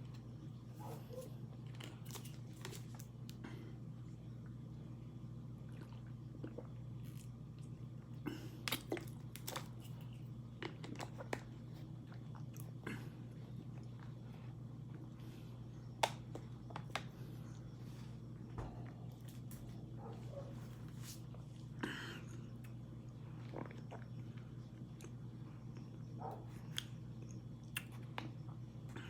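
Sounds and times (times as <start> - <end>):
low hum: 0.0 - 29.0
person chewing crunchily: 8.4 - 15.2.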